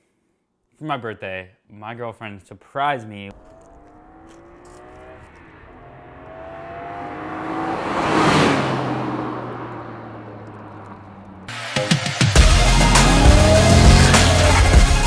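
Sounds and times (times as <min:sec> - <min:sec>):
car accelerating past: 0:03.3 - 0:11.5, 0:12.4 - 0:15.0
electronic music: 0:11.5 - 0:15.0.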